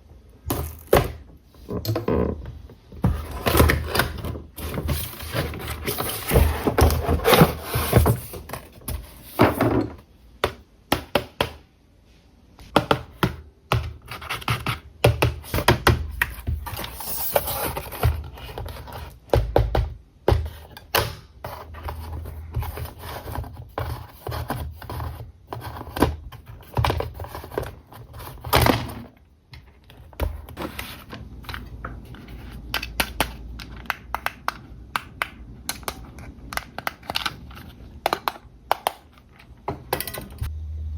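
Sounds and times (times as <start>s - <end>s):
packaging knocks and scratching: 1.8s - 10.0s, 13.8s - 19.7s, 21.4s - 32.8s.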